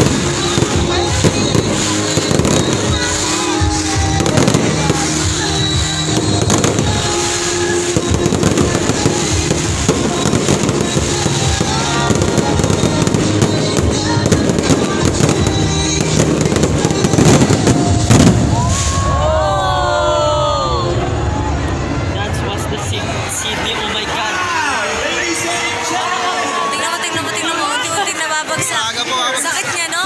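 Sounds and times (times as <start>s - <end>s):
loud music with held notes: 0.0s - 19.6s
fireworks crackling and popping: 0.0s - 19.8s.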